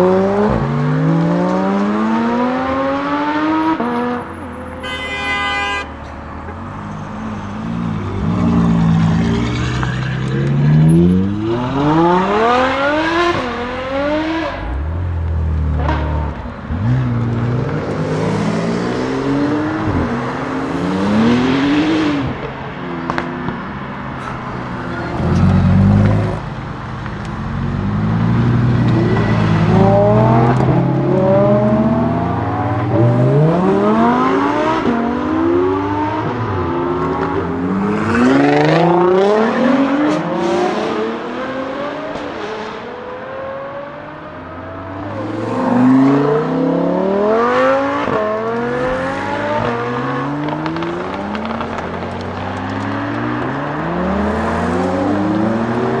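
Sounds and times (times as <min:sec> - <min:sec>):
sports car accelerating through gears: 0:00.0 - 0:04.7, 0:06.5 - 0:56.0.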